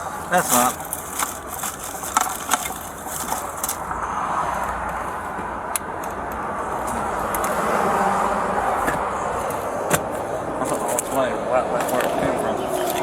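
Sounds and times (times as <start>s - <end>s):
vehicle passing: 2.7s - 13.0s.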